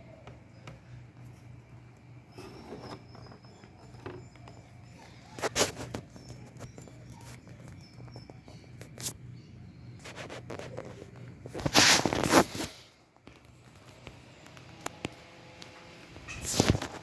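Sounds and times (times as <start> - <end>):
handling clicks and knocks: 0.0 - 9.1
scraping rustle: 2.3 - 9.2, 10.0 - 12.9, 16.3 - 17.0.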